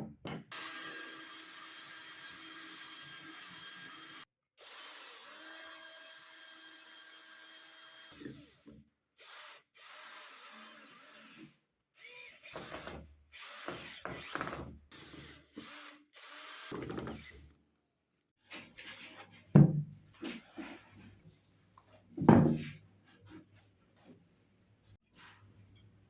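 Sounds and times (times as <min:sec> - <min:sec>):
drill running on wood: 0:00.5 - 0:17.5.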